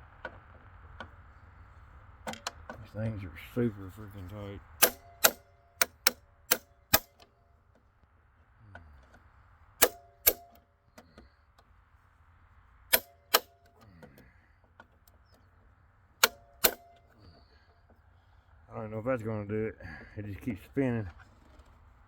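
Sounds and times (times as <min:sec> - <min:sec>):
impact driver metallic clacks: 0:04.8 - 0:07.3, 0:09.8 - 0:11.3, 0:12.9 - 0:15.5, 0:16.2 - 0:17.5.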